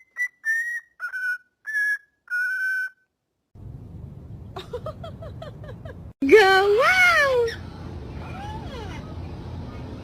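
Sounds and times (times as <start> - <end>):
parrot whistling: 0.0 - 3.1.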